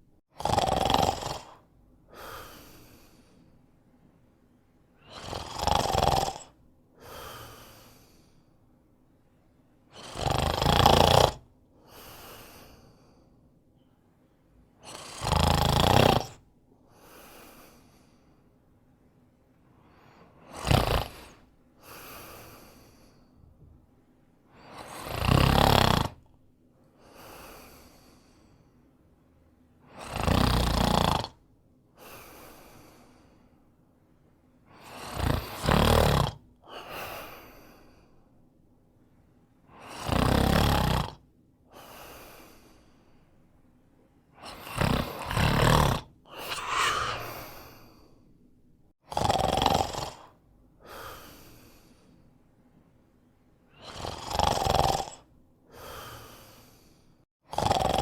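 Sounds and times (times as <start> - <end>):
man snoring: 0.3 - 3.2, 5.0 - 8.2, 10.0 - 12.8, 14.8 - 16.4, 20.4 - 23.2, 24.7 - 26.3, 29.9 - 31.4, 34.8 - 36.4, 39.8 - 41.2, 44.4 - 48.0, 49.0 - 51.8, 53.8 - 56.9, 57.5 - 58.0
soft breath: 2.1 - 4.3, 7.0 - 9.5, 11.8 - 14.6, 16.8 - 24.9, 26.8 - 29.1, 31.9 - 33.8, 36.7 - 39.9, 41.7 - 49.0, 50.8 - 53.0, 55.7 - 57.3.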